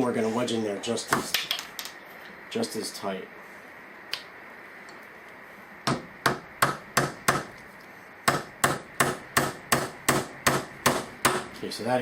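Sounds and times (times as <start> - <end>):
hammer striking wood: 5.9 - 7.5, 8.2 - 11.5.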